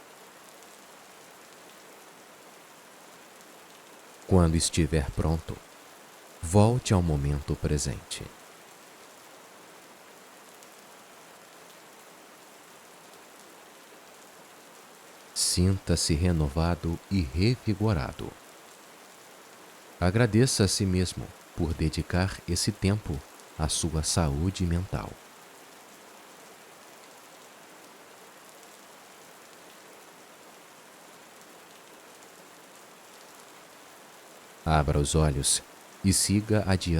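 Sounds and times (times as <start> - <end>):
rain falling: 0.0 - 36.9.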